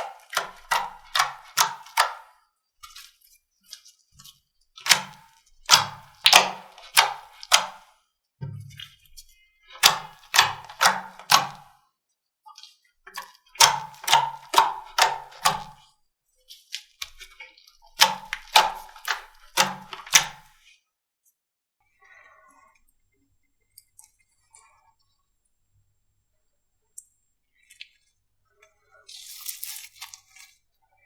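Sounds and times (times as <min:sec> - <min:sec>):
slime squished by hand: 0:00.0 - 0:02.3, 0:04.8 - 0:07.9, 0:09.8 - 0:11.7, 0:13.1 - 0:15.8, 0:18.0 - 0:20.6.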